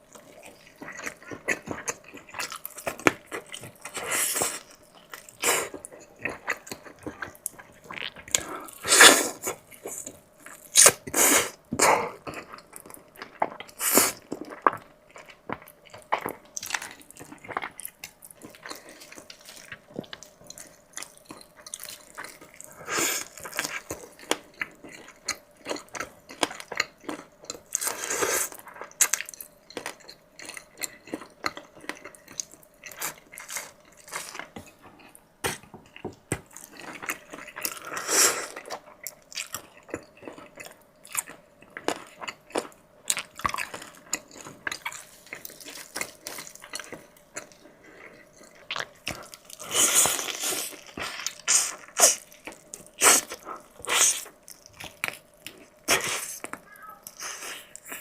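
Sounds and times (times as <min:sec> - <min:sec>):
person chewing and biting food: 0:11.8 - 0:58.0.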